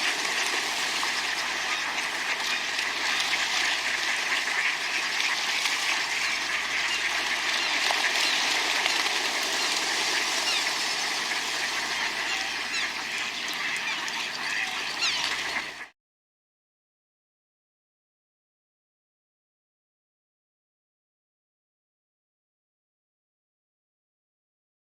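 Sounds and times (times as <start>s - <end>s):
ducks quacking: 0.0s - 15.9s
water splashing: 0.0s - 15.9s.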